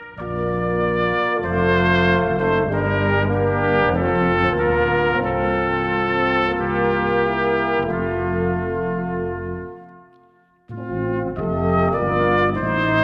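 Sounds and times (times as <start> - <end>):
brass ensemble playing a hymn: 0.0 - 10.0, 10.7 - 13.0.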